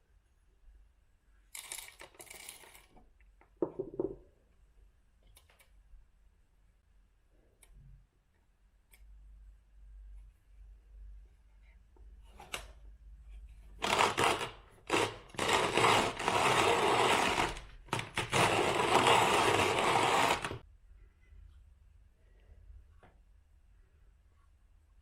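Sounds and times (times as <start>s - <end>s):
coffee grinder crunching beans: 13.8s - 20.6s.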